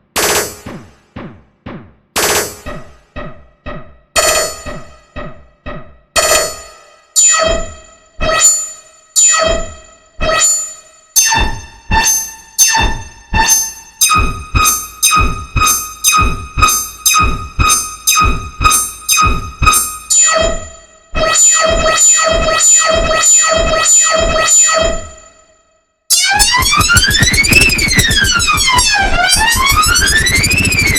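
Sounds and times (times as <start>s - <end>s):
buzzy pulsing synth tone: 26.1s - 30.9s
synthesized keyboard notes: 26.1s - 30.9s.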